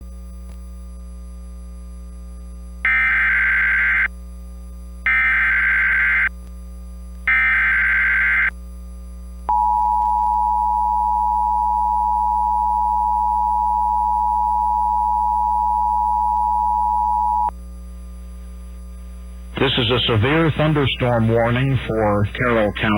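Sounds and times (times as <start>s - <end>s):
low mains hum: 0.0s - 22.9s
screeching digital data bursts: 2.9s - 4.1s, 7.3s - 8.5s.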